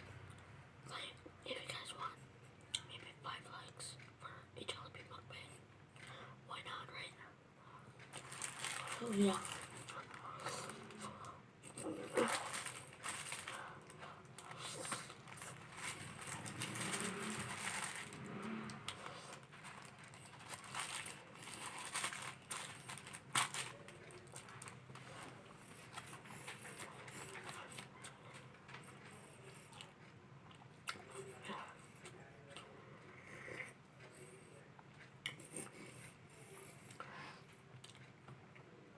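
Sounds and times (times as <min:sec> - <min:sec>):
food handling clicks and rustles: 0:08.0 - 0:31.1
chewing: 0:08.0 - 0:38.7.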